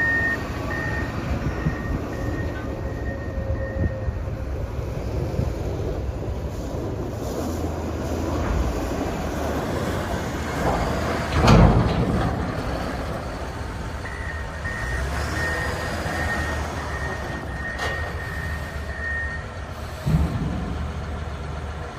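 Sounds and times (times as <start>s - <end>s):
reversing alarm beeps: 0.0s - 4.2s, 14.0s - 19.6s
diesel engine running: 0.0s - 21.9s.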